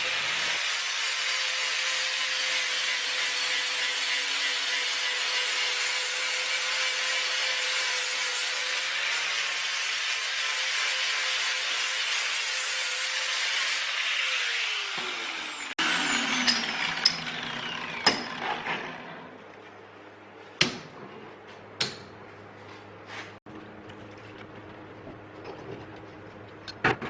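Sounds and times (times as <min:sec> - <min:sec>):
electric grinder whine: 0:13.8 - 0:19.4.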